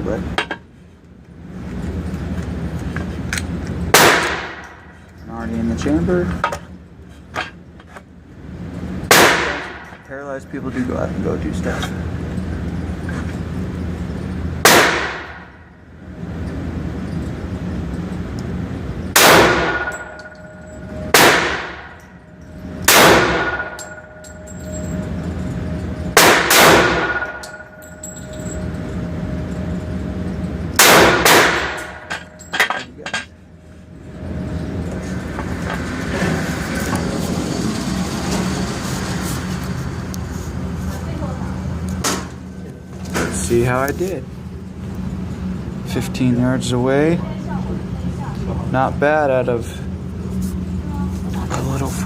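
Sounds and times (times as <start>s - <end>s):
steady low hum: 0.0s - 52.0s
pistol shots: 3.9s - 4.7s, 9.1s - 9.8s, 14.6s - 15.5s, 19.2s - 20.1s, 21.1s - 21.9s, 22.9s - 23.8s, 26.2s - 27.5s, 30.8s - 32.0s.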